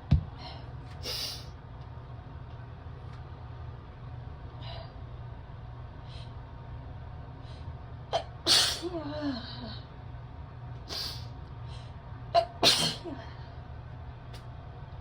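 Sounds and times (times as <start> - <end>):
person sneezing: 12.4 - 13.2.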